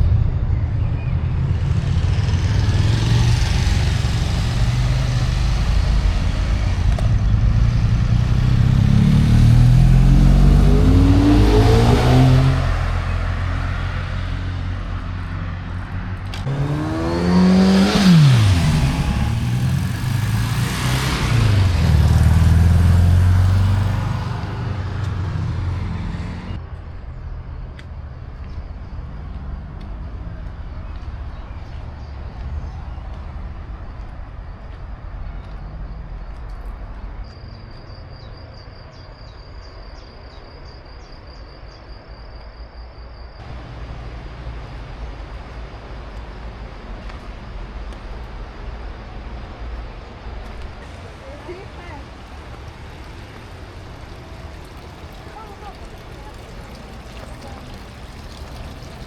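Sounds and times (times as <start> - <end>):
vehicle engine speeding up: 0.0 - 26.6, 43.4 - 59.0
vehicle passing by: 0.0 - 37.0, 43.4 - 59.0
steady traffic rumble: 0.0 - 59.0.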